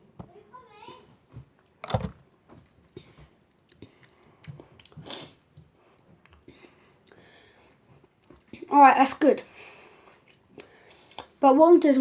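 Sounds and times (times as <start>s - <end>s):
wet chewing and smacking: 2.7s - 7.2s, 8.1s - 8.6s, 10.1s - 11.3s.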